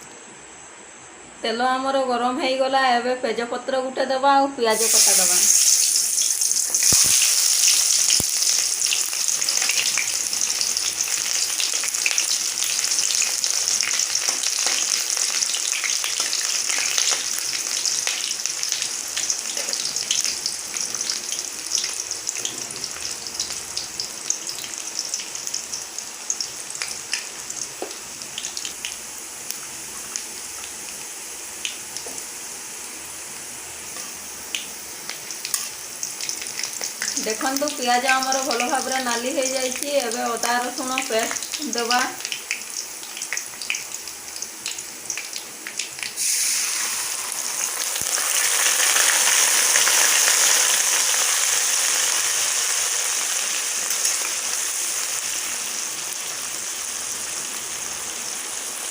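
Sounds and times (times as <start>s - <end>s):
onion sizzling in hot oil: 4.7s - 58.9s.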